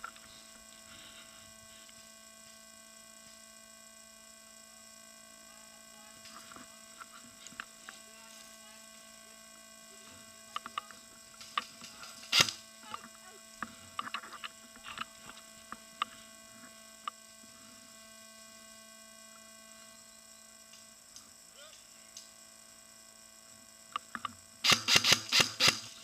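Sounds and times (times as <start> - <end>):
steady electrical hum: 0.0 - 26.0.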